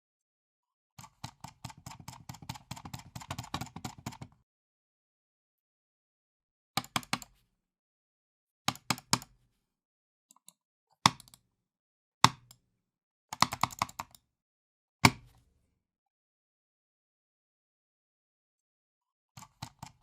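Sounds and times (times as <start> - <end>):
computer mouse clicking hard: 1.0 - 4.4, 6.8 - 7.3, 13.4 - 14.2, 19.4 - 20.0.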